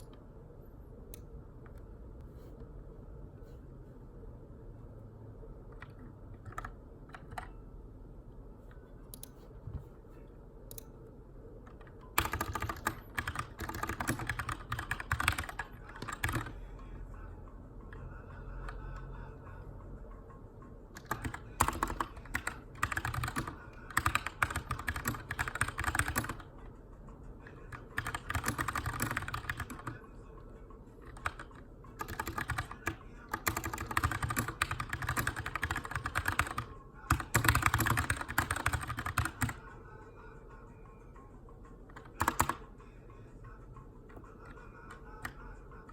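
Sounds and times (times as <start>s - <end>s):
mechanical keyboard typing: 5.8s - 7.6s, 11.7s - 16.6s, 21.0s - 26.5s, 27.5s - 30.0s, 31.0s - 39.6s, 41.9s - 42.6s.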